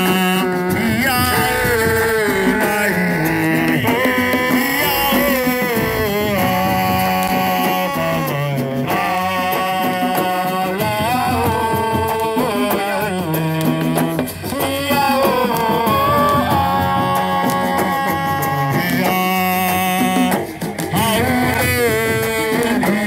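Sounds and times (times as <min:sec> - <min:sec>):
drums: 0:00.0 - 0:23.0
person singing: 0:00.0 - 0:23.0
bass line: 0:00.7 - 0:09.0.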